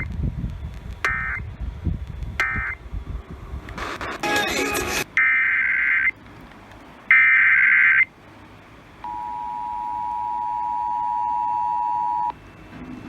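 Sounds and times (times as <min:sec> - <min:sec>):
warbling data burst: 0:03.8 - 0:06.1.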